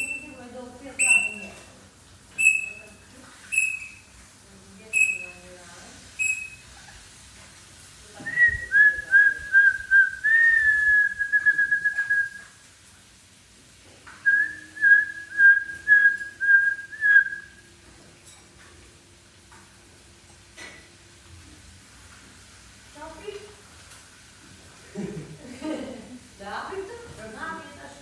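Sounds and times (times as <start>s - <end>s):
high whistled notes with trill: 2.4s - 2.9s, 3.5s - 4.0s, 6.2s - 6.7s.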